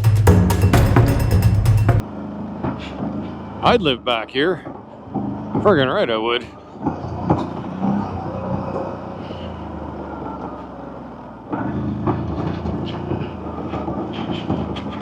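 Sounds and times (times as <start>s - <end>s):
atv engine running: 0.1s - 15.0s.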